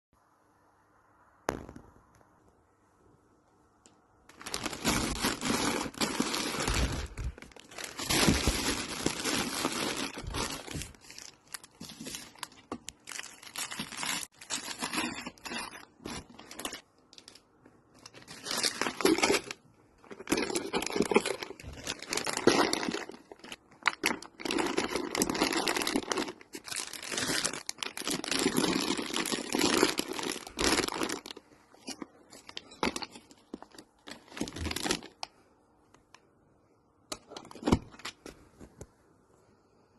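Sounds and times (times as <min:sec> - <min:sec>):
plastic wrappers crinkling: 0:04.3 - 0:35.4.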